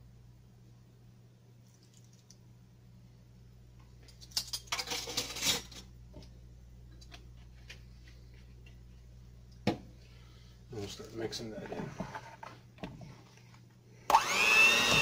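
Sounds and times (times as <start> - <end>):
low electrical hum: 0.0 - 15.0
kitchen utensils clinking: 4.2 - 5.9.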